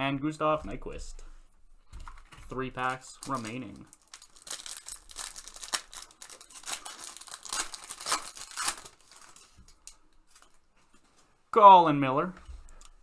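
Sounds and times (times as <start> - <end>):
foil wrapper tearing and crinkling: 2.8 - 10.6.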